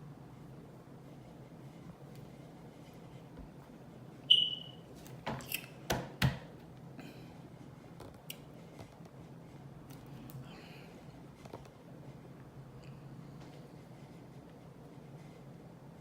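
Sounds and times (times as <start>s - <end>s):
high squeak: 4.3s - 4.8s.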